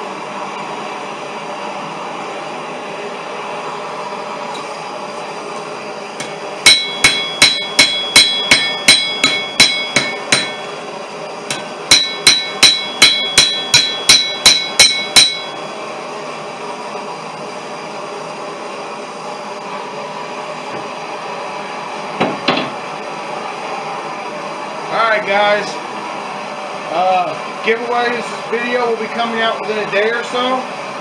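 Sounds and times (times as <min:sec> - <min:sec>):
hammer striking steel anvil: 0:06.2 - 0:10.8, 0:11.5 - 0:15.6.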